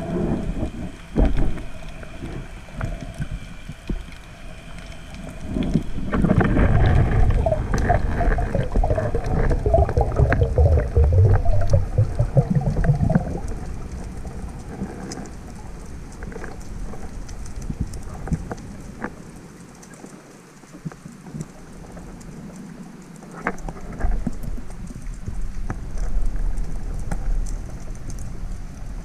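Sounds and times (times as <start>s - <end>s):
underwater rushing water: 0.0s - 29.0s
sharp clicks underwater: 0.6s - 28.8s.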